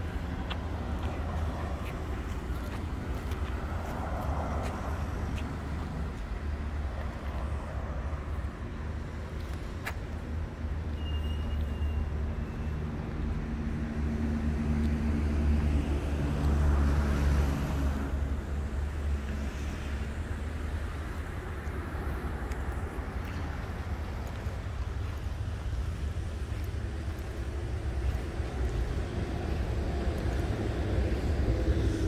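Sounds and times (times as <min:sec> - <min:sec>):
road traffic passing: 0:00.0 - 0:32.0
heavy vehicle engine rumble: 0:15.4 - 0:32.0.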